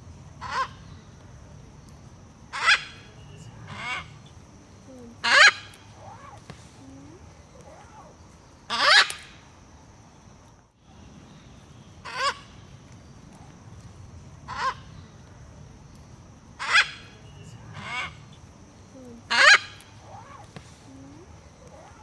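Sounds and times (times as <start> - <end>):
macaw squawking: 2.6 - 3.1, 5.2 - 6.4, 16.6 - 17.1, 19.3 - 22.0.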